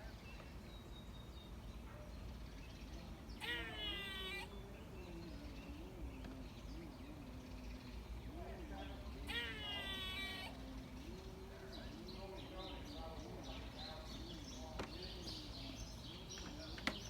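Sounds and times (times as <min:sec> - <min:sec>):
squirrel mewing call: 0:03.4 - 0:04.6, 0:09.2 - 0:10.7.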